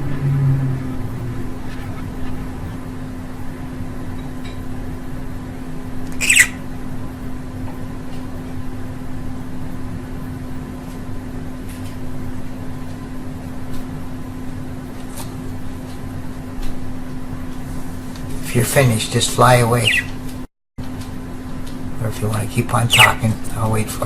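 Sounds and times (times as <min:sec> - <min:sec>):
steady low hum: 0:00.0 - 0:24.0
budgerigar chirping: 0:06.2 - 0:06.6, 0:19.8 - 0:20.2, 0:22.8 - 0:23.3.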